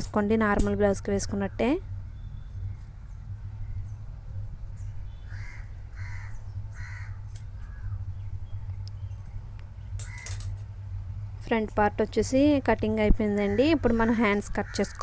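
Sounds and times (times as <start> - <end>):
steady low hum: 0.0 - 15.0
crow cawing: 5.2 - 8.0, 10.0 - 10.4, 14.6 - 15.0.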